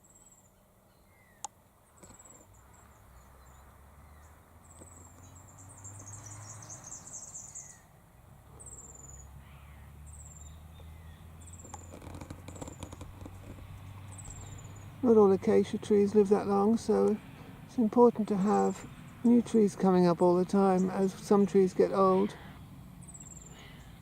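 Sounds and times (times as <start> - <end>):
bird chirping: 0.0 - 7.9, 8.5 - 24.0
high bird twittering: 8.6 - 15.1, 21.9 - 24.0.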